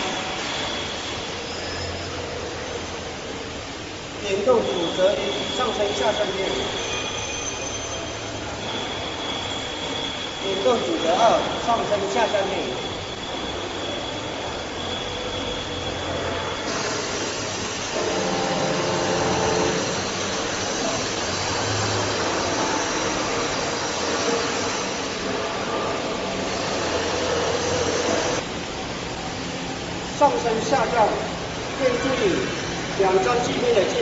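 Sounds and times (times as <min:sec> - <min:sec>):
saw spindle drive motor hum: 0:16.6 - 0:24.0.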